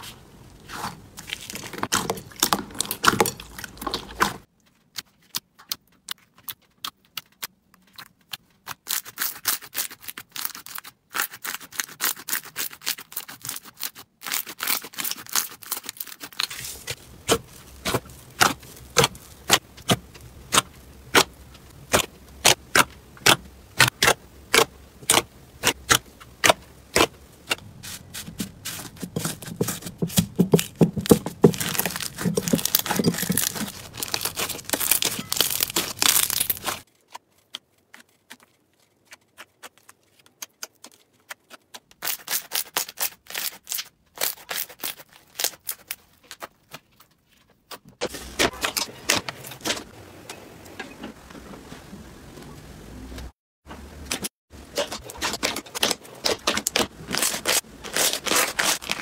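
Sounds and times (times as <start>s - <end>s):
slime crackling and popping: 5.6s - 39.8s.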